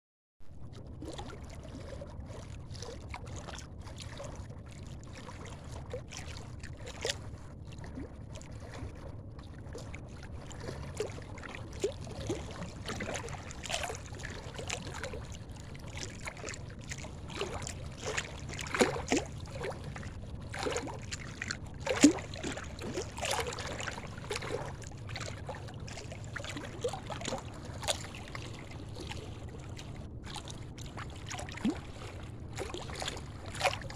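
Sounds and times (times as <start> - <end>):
river water splashing on concrete: 11.8 - 15.3, 15.9 - 29.3, 30.3 - 33.9.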